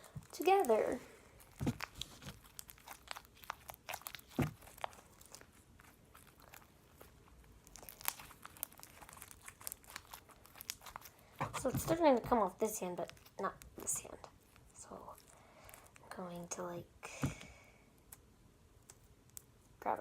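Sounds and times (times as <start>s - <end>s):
slime squelching and clicking: 1.4s - 16.0s.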